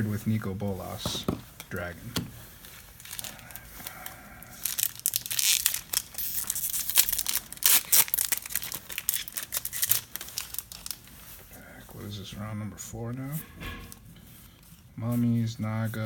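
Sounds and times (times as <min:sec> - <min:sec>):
foil wrapper crinkling and tearing: 0:02.6 - 0:11.5.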